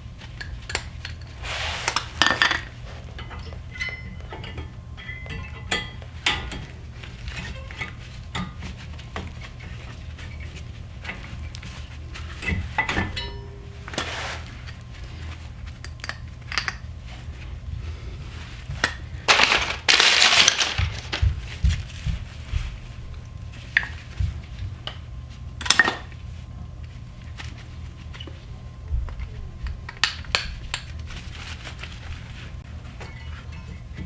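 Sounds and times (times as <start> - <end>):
metal tools clinking and clattering: 19.3 - 21.3.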